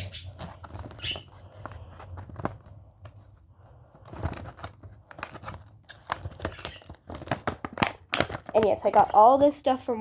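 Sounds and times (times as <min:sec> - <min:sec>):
plastic blister packaging crackling: 0:04.0 - 0:09.2.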